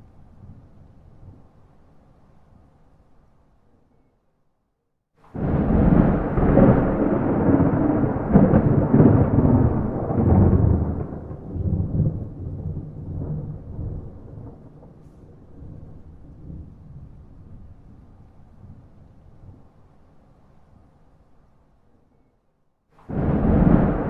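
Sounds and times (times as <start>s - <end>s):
thunder rumbling: 5.3s - 19.7s, 23.0s - 24.0s.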